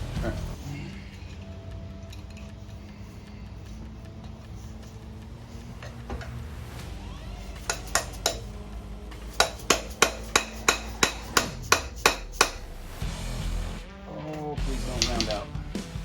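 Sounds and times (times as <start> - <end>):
hammer striking metal: 7.5 - 12.9, 14.7 - 15.5.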